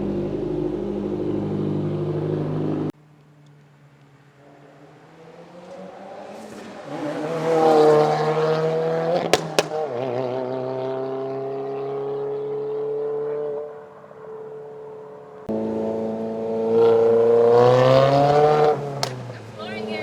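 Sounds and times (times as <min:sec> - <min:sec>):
car engine revving: 0:04.4 - 0:14.0, 0:15.5 - 0:20.0
exhaust pops: 0:09.2 - 0:10.2, 0:18.3 - 0:19.5.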